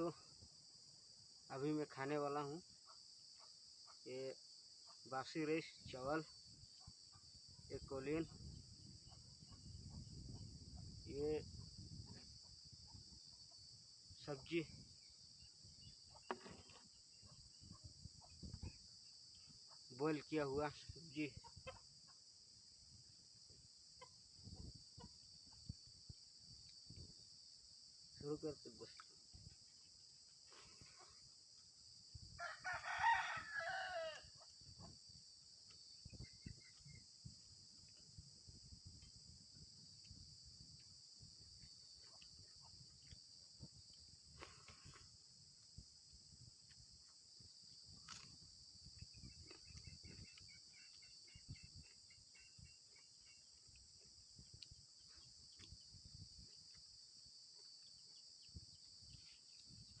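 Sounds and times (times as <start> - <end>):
crickets chirping: 0.0 - 60.0
rooster crowing: 32.4 - 34.4.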